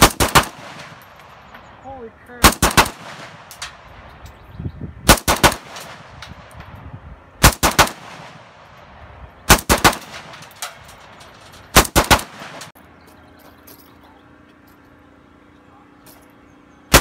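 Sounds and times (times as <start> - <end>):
semi-automatic gunfire: 0.0 - 1.0, 2.4 - 3.5, 5.1 - 6.1, 7.4 - 8.5, 9.5 - 10.4, 11.8 - 12.7.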